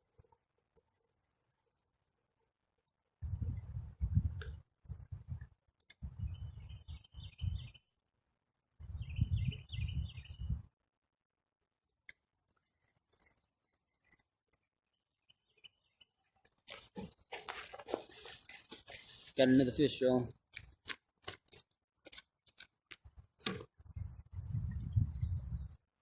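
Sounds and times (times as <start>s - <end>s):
wind buffeting microphone: 3.2s - 7.8s, 8.8s - 10.7s, 23.8s - 25.8s
songbird chirping: 6.0s - 8.0s, 8.8s - 10.6s, 14.6s - 17.1s.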